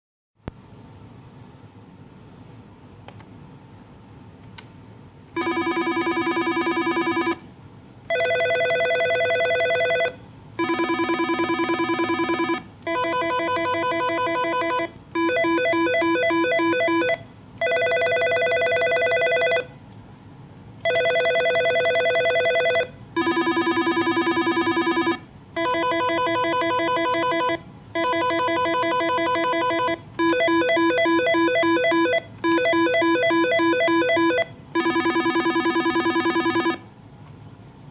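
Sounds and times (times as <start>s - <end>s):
office phone ringing: 5.4s - 7.4s, 8.1s - 19.7s, 20.8s - 36.9s.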